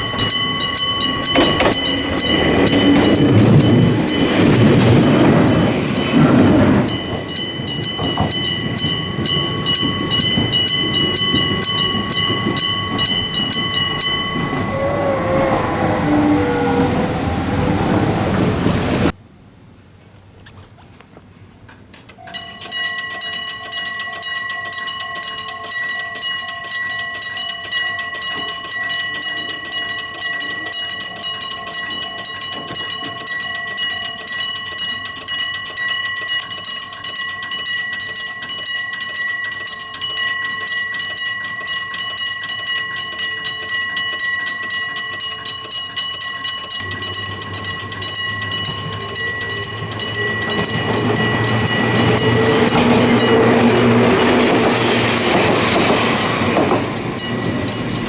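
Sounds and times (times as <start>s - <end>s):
approaching train rumble: 0.0s - 19.2s, 46.4s - 58.0s
level-crossing electric bell ringing: 0.0s - 19.2s, 22.2s - 58.0s.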